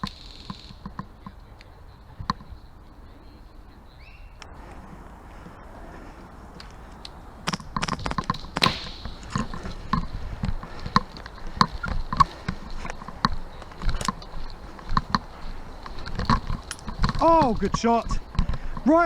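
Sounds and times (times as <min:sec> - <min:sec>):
airsoft rifle shots clicking: 0:07.5 - 0:09.8.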